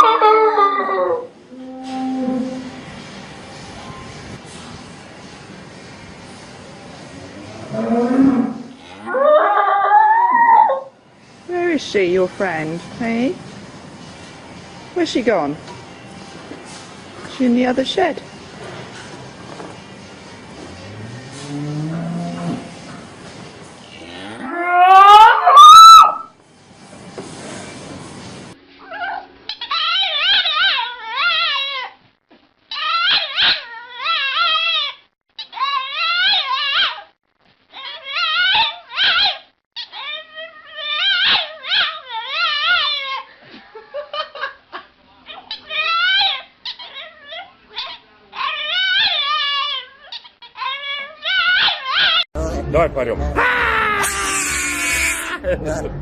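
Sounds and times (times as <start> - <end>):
animal crying out: 0.0 - 2.8, 8.1 - 10.9, 24.1 - 26.3, 32.7 - 37.1, 37.8 - 43.3, 45.4 - 52.2, 53.4 - 55.4
cow mooing: 1.5 - 2.9, 7.3 - 9.5, 20.7 - 22.9, 23.9 - 25.2.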